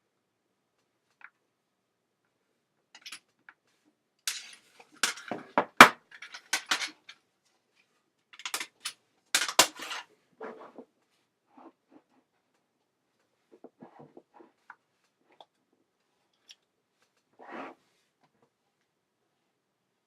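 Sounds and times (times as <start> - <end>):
small objects clinking and rattling: 4.3 - 5.5, 6.1 - 7.2, 8.4 - 10.0.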